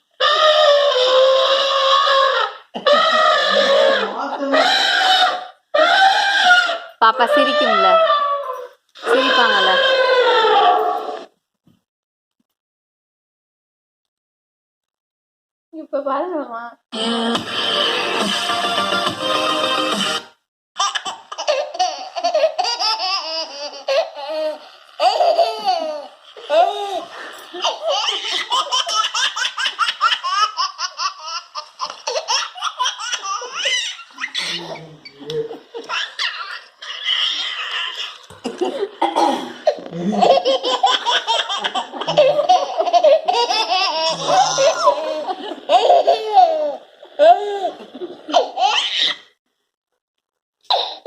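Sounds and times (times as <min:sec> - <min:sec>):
music clip: 0:17.0 - 0:20.4
baby laughing and squealing: 0:20.8 - 0:38.4, 0:39.6 - 0:49.3.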